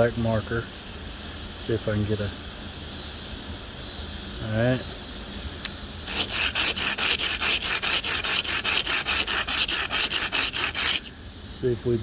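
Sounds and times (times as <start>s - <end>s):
blade scraping on concrete: 6.1s - 11.1s.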